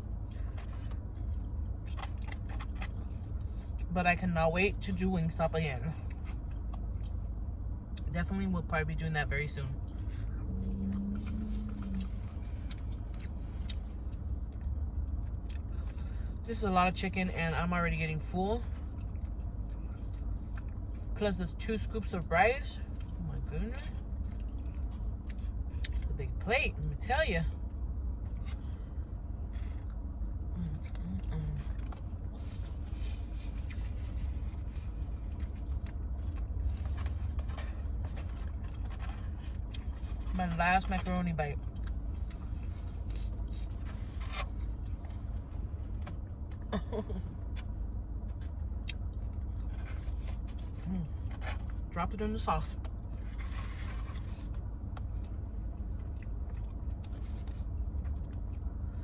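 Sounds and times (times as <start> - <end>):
low rumble in car cabin: 0.0 - 59.0
steady low hum: 0.0 - 59.0
chewing: 0.3 - 3.9, 10.1 - 16.1.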